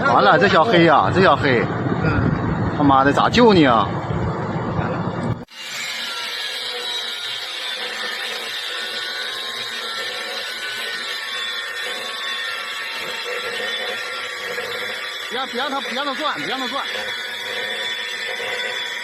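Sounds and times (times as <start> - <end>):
angle grinder cutting metal pipe: 5.4 - 19.0.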